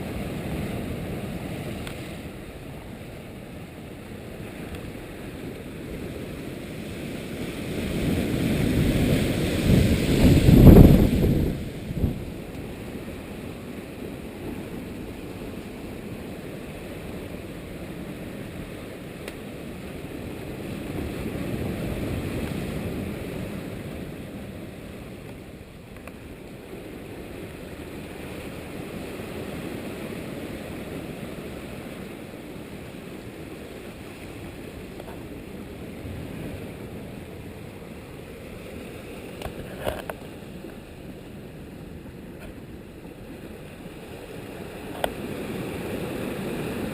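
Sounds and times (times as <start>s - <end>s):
wind buffeting microphone: 5.8s - 15.1s.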